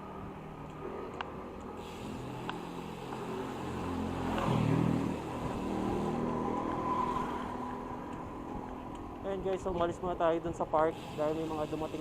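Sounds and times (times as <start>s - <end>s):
vehicle engine passing by: 2.1s - 8.0s.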